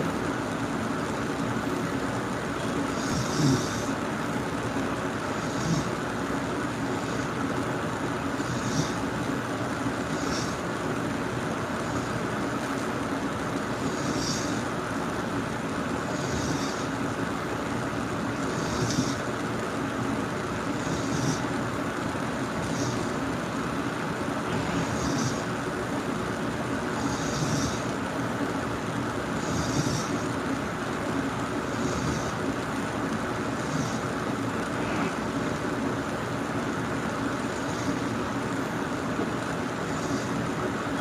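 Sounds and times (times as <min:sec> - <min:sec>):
steady background noise: 0:00.0 - 0:41.0
person snoring: 0:02.8 - 0:04.0, 0:05.2 - 0:06.1, 0:07.0 - 0:07.6, 0:08.3 - 0:09.2, 0:10.0 - 0:10.6, 0:11.8 - 0:12.2, 0:13.7 - 0:14.8, 0:16.0 - 0:17.1, 0:18.4 - 0:19.3, 0:20.6 - 0:21.6, 0:22.4 - 0:23.2, 0:24.4 - 0:25.6, 0:26.8 - 0:28.1, 0:29.3 - 0:30.4, 0:31.6 - 0:32.5, 0:33.4 - 0:35.4, 0:36.5 - 0:39.0, 0:39.7 - 0:41.0.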